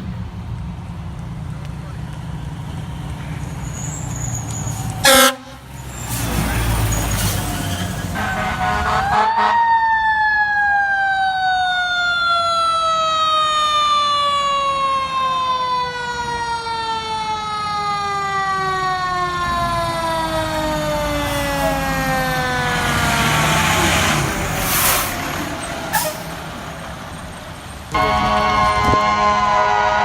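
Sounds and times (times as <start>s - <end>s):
fire truck siren winding: 9.0s - 23.8s.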